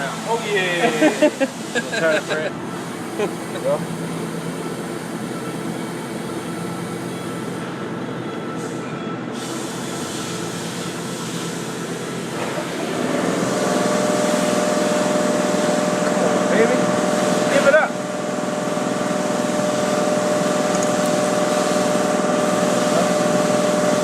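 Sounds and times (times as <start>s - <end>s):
steady hum: 0.0s - 24.0s
plasma cutter cutting metal: 19.0s - 24.0s.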